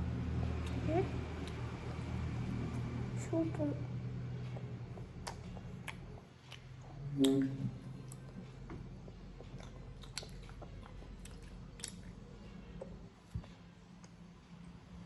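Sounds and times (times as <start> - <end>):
person chewing food: 4.4 - 14.2.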